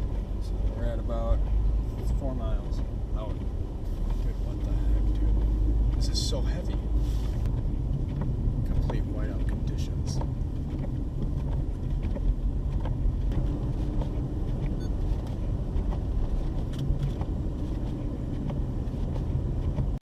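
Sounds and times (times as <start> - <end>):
car engine and road rumble: 0.0 - 20.0.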